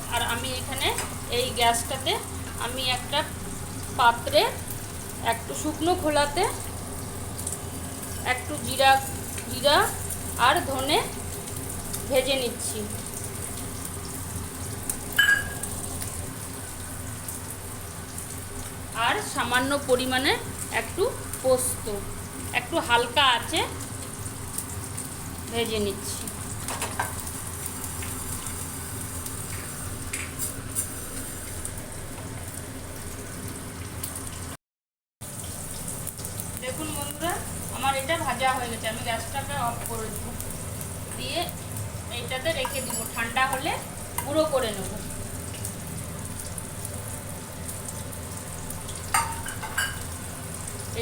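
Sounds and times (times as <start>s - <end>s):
fish sizzling in hot oil: 0.0s - 34.6s, 35.2s - 51.0s
metallic clink: 15.2s - 15.7s.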